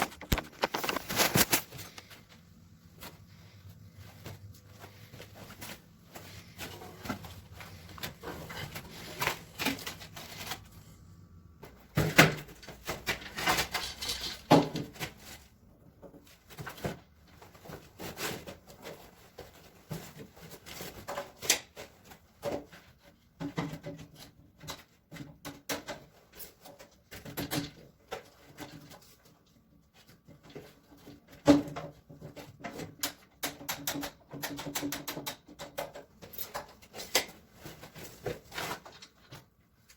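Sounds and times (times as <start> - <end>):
objects knocking and clattering: 0.0 - 2.2, 11.6 - 29.3, 30.2 - 39.5.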